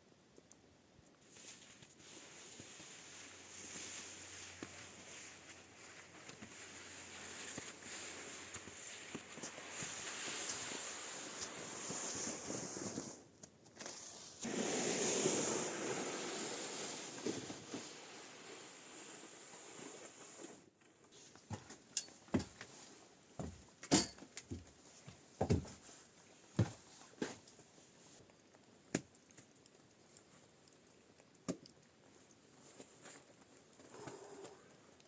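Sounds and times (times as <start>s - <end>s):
steady hiss: 1.2s - 20.6s.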